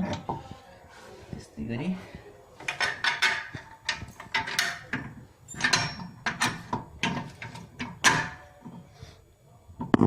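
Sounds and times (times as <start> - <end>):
bolts clicking and scraping: 2.6 - 9.0.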